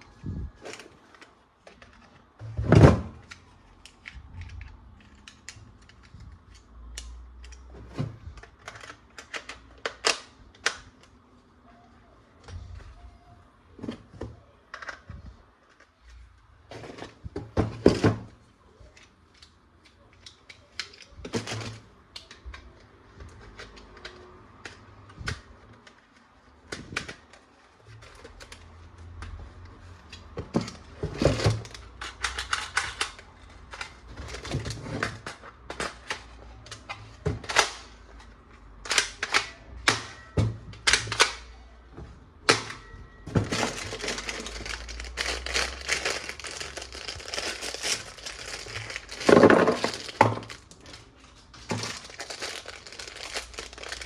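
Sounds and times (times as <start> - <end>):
plastic toy parts clicking: 8.4 - 11.1, 31.6 - 41.5
plastic packaging crinkling: 43.3 - 54.0.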